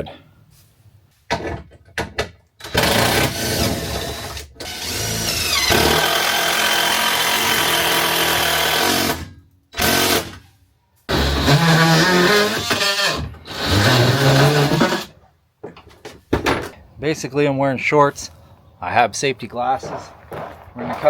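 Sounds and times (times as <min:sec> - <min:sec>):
handheld power tool running: 0:02.7 - 0:10.4, 0:11.1 - 0:15.1.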